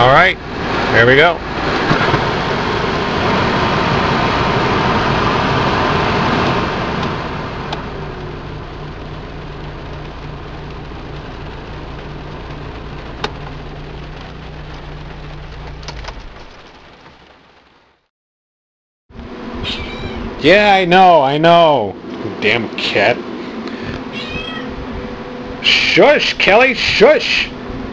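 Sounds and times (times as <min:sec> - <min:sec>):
car blower fan running: 0:00.0 - 0:17.6, 0:19.2 - 0:27.9
car engine idling hum: 0:00.0 - 0:18.0, 0:19.2 - 0:27.9.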